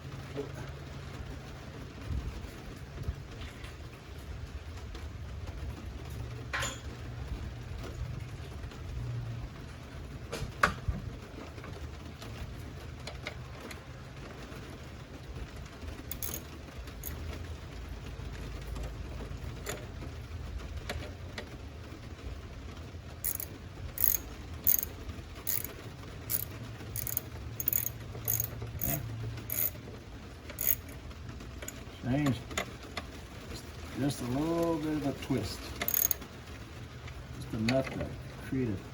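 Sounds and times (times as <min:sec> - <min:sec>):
socket ratchet clicking: 0:16.1 - 0:17.2, 0:23.2 - 0:24.9, 0:25.5 - 0:29.8, 0:30.6 - 0:31.0, 0:35.8 - 0:36.2.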